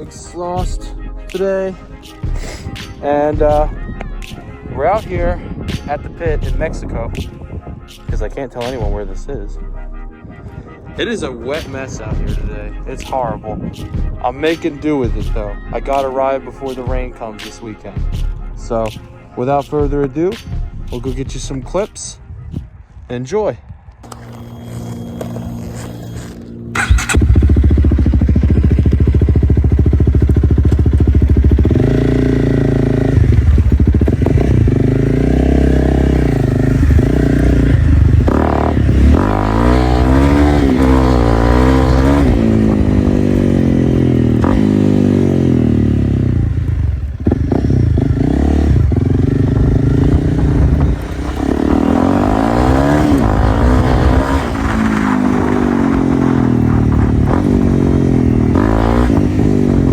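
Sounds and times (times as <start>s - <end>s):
loud motorcycle engine revving: 24.2s - 59.9s.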